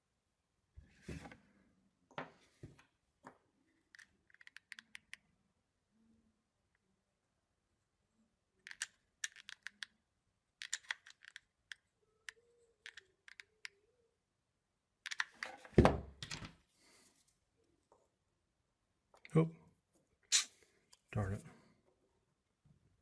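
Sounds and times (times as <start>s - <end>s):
wooden pieces clicking: 4.0s - 5.1s, 8.6s - 9.9s, 10.6s - 11.8s, 12.8s - 13.7s.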